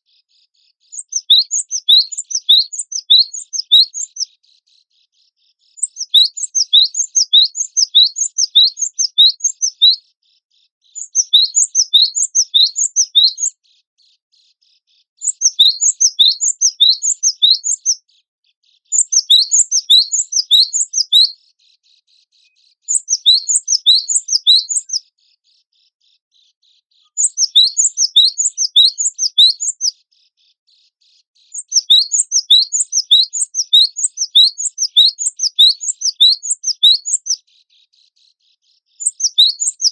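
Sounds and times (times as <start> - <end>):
bird singing high rising notes: 1.0 - 4.2, 5.8 - 10.0, 11.0 - 13.5, 15.2 - 18.0, 19.0 - 21.4, 22.9 - 25.0, 27.2 - 29.9, 31.6 - 37.4, 39.0 - 39.9.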